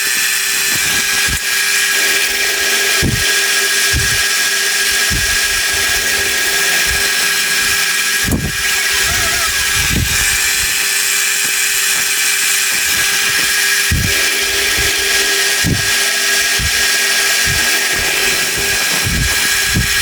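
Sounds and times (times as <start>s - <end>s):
metalworking machine whining: 0.0s - 20.0s
low thumps: 3.9s - 4.2s, 4.9s - 8.8s, 12.8s - 20.0s.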